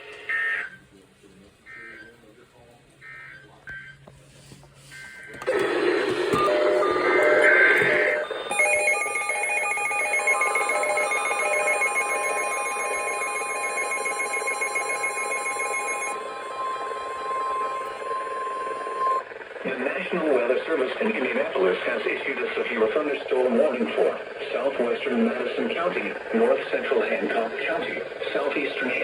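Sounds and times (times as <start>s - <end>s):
steady high alarm tone: 5.5s - 19.4s
pulsing electronic beeping: 6.4s - 16.4s.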